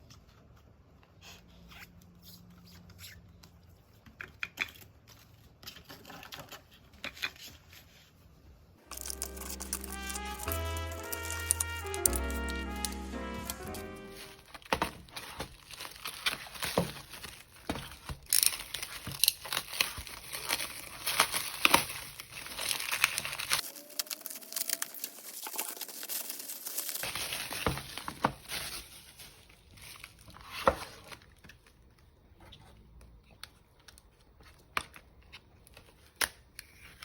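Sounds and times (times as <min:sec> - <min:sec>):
packaging crinkling and rustling: 0:14.1 - 0:32.1.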